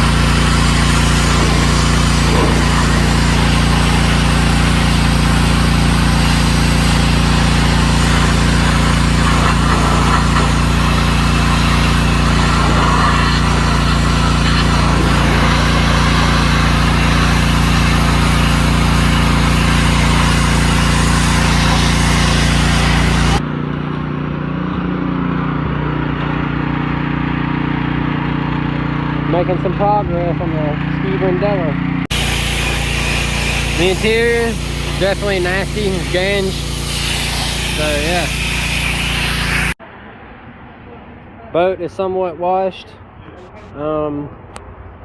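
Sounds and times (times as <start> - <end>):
water spray hissing: 0.0 - 23.4, 32.1 - 39.8
pressure washer engine humming: 0.0 - 39.8.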